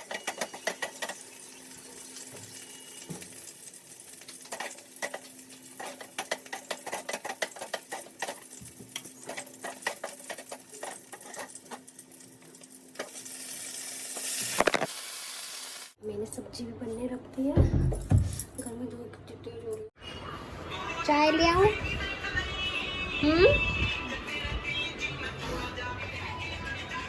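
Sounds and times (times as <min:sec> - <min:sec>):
food sizzling: 0:00.0 - 0:16.0
spatula scraping a pan: 0:04.4 - 0:11.8.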